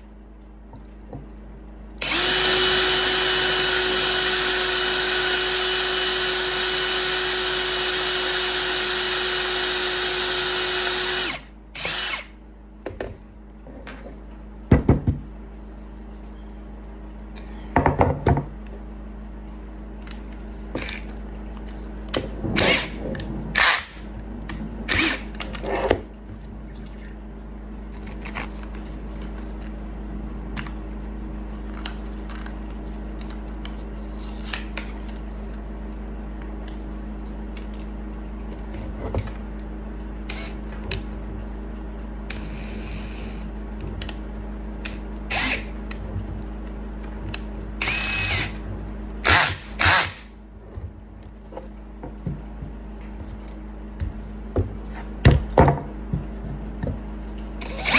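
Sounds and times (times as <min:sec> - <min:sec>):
electric drill running: 0:02.0 - 0:12.4, 0:23.6 - 0:24.0, 0:45.3 - 0:45.7, 0:47.8 - 0:48.6, 0:49.2 - 0:50.3, 0:57.6 - 0:57.9.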